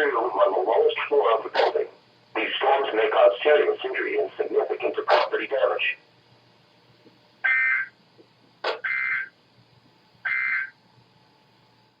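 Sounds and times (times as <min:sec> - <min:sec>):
digital warble data bursts: 0:08.8 - 0:09.3, 0:10.3 - 0:10.8.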